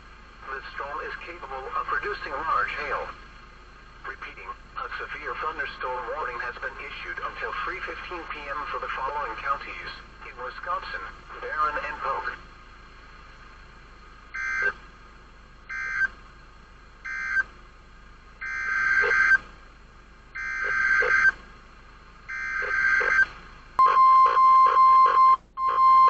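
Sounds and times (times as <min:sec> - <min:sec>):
loud steady alarm tone: 0:14.3 - 0:14.8, 0:15.7 - 0:16.1, 0:17.0 - 0:17.5, 0:18.4 - 0:19.4, 0:20.4 - 0:21.4, 0:22.3 - 0:26.0.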